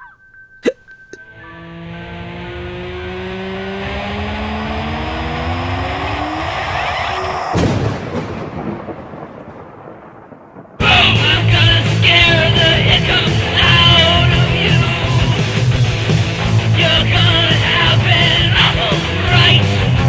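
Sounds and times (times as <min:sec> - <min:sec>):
rising pitched drone: 0:01.1 - 0:07.7
crash with rumble: 0:07.4 - 0:12.2
loud rock music: 0:10.8 - 0:20.0.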